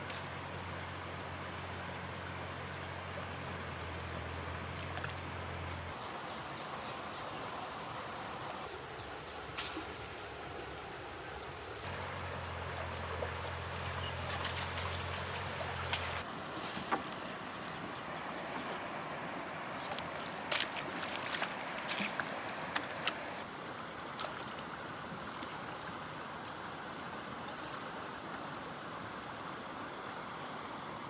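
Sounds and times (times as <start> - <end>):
low steady hum: 0.1 - 16.2
flowing water rushing: 4.5 - 16.4, 18.4 - 27.4.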